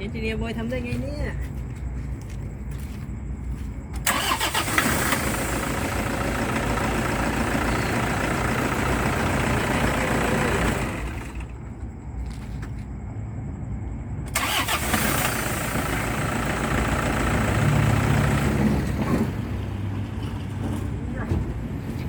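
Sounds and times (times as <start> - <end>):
pickup engine starting and running: 4.0 - 11.9, 14.3 - 22.0.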